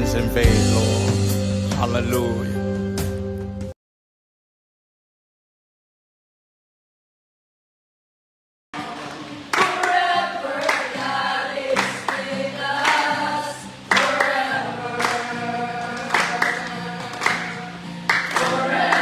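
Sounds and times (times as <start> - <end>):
congregation singing: 8.8 - 19.0.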